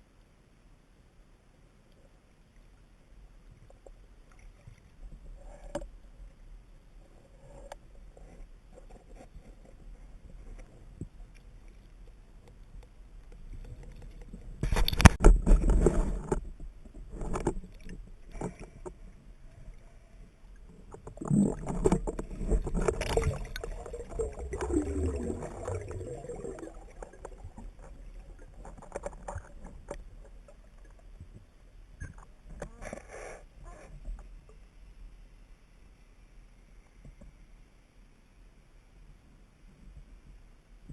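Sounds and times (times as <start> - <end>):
water noise bursts: 21.1 - 28.7.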